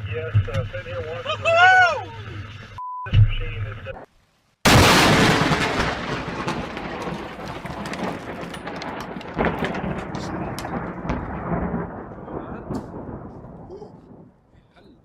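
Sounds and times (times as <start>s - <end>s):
loud thunderclap and rumble: 4.7s - 15.0s
sharp thunder cracks: 4.7s - 15.0s.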